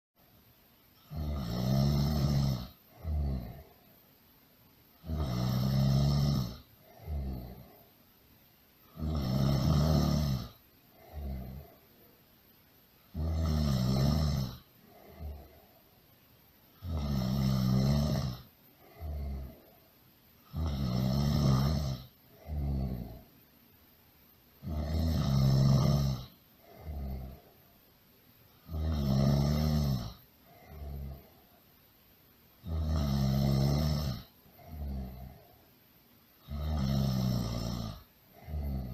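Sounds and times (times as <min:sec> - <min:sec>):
loud snoring: 0:01.0 - 0:03.8, 0:05.0 - 0:07.9, 0:08.9 - 0:11.8, 0:13.1 - 0:15.7, 0:16.8 - 0:19.8, 0:20.4 - 0:23.3, 0:24.6 - 0:27.6, 0:28.6 - 0:31.4, 0:32.6 - 0:35.6, 0:36.4 - 0:38.9.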